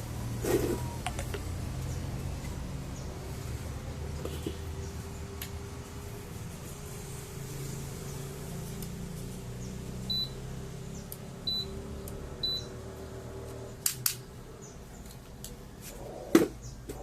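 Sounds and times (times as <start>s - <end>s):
washing machine beeps: 10.1s - 10.4s, 11.5s - 11.7s, 12.4s - 12.7s
sharp clicks: 13.8s - 14.2s.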